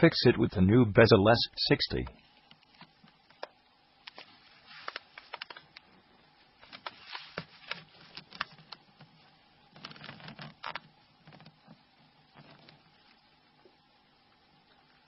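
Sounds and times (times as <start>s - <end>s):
soft rubbing: 4.2s - 5.3s.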